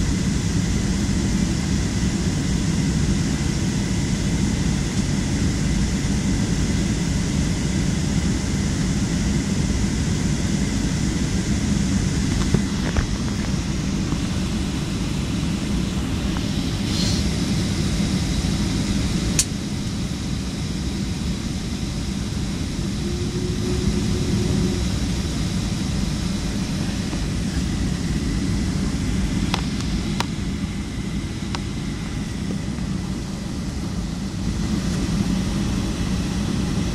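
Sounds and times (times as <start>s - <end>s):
air-conditioning airflow: 0.0s - 36.9s
airliner engines rumbling: 0.0s - 36.9s
low hum: 10.6s - 36.4s.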